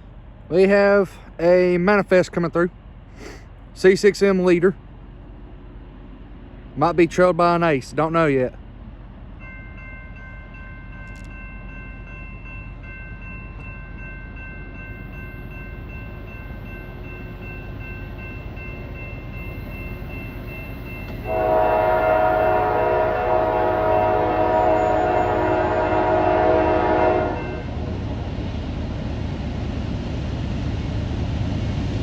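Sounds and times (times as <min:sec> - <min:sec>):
diesel locomotive rumble: 0:00.0 - 0:32.0
locomotive air horn blast: 0:21.2 - 0:27.8.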